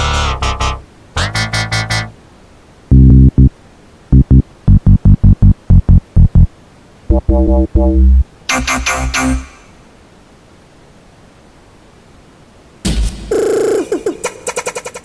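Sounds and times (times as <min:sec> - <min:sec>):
bright synth stabs: 0:02.9 - 0:03.5, 0:04.1 - 0:06.5, 0:07.1 - 0:09.7
long pitched synth note: 0:02.9 - 0:03.5, 0:07.1 - 0:09.7
short loud bass notes: 0:02.9 - 0:06.5, 0:07.1 - 0:09.6.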